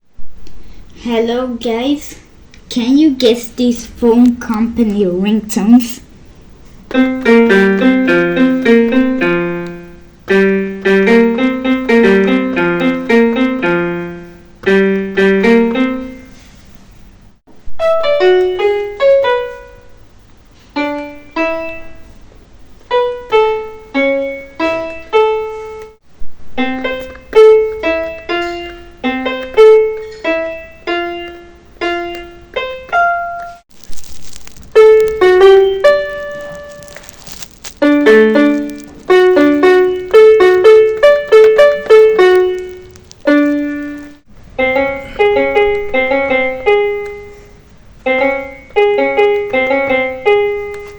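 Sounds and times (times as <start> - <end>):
piano playing ringtone melodies: 6.9 - 16.4, 17.8 - 20.0, 20.8 - 22.1, 22.9 - 26.0, 26.6 - 33.7, 34.8 - 50.9.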